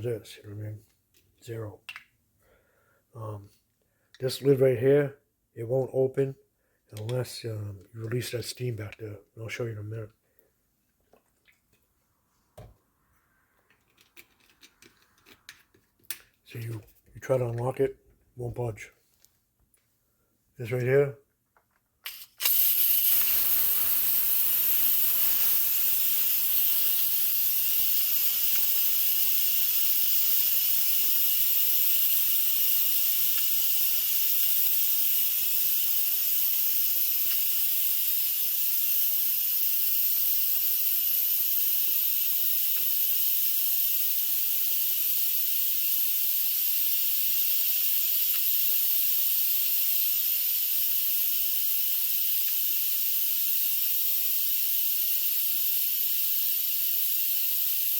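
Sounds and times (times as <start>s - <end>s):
pressure cooker venting steam: 22.1s - 57.9s.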